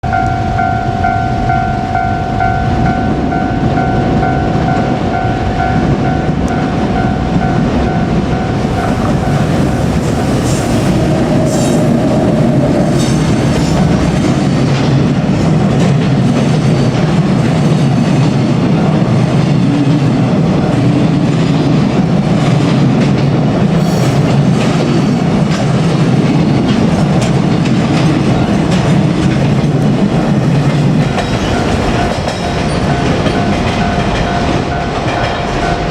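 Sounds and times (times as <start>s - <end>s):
level crossing warning bell: 0.0s - 11.1s, 28.2s - 35.9s
freight train rumble: 0.0s - 35.9s
wagon wheels clacking on rail joints: 3.0s - 35.9s.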